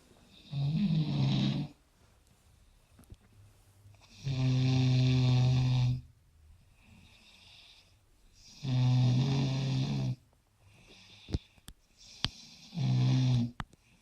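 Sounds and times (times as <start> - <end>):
person snoring loudly: 0.4 - 1.8, 4.1 - 6.0, 8.5 - 10.2, 12.1 - 13.6.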